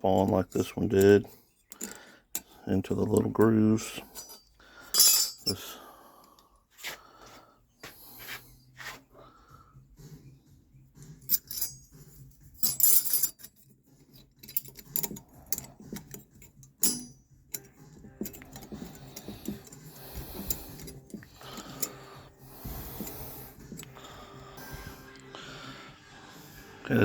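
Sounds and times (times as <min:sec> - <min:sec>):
metal brake parts clinking: 0:00.1 - 0:05.7, 0:11.3 - 0:22.1.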